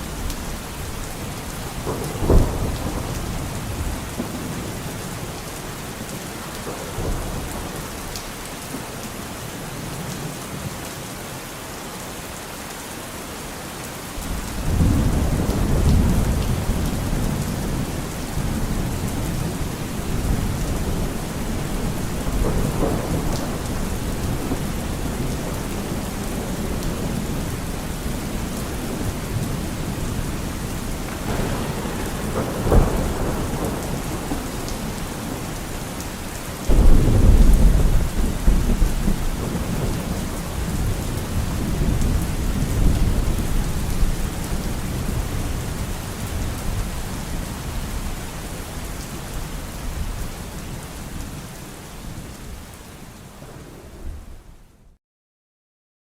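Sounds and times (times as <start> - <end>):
thunder rumbling: 0.0 - 5.4, 14.2 - 47.9, 52.5 - 54.9
steady rain falling: 0.0 - 55.0
thunder crack: 1.6 - 4.7, 14.6 - 44.1.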